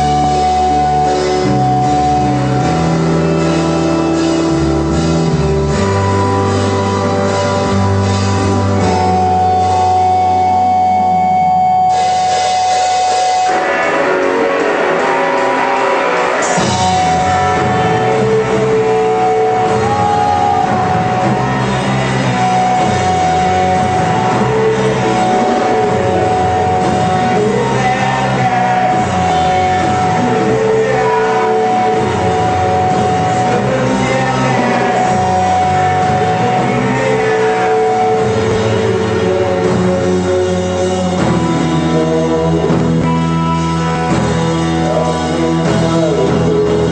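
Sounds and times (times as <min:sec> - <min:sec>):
live rock band playing: 0:00.0 - 0:46.9
person singing or shouting: 0:13.4 - 0:43.2.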